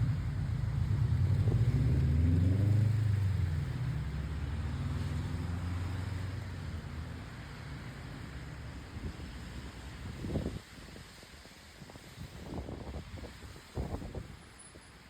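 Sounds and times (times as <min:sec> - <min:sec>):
motor vehicle passing by: 0:00.0 - 0:07.7.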